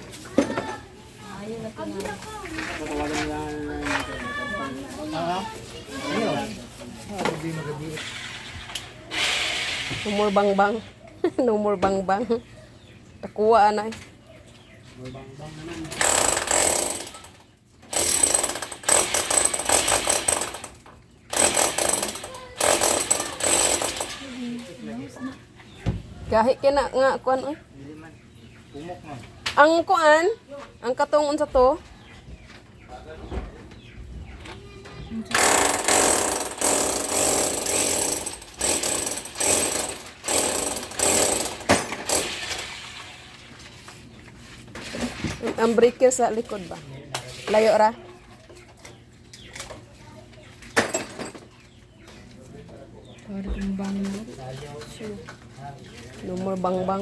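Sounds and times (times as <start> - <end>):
hammer drill boring into wall: 15.9 - 24.4, 35.3 - 42.7.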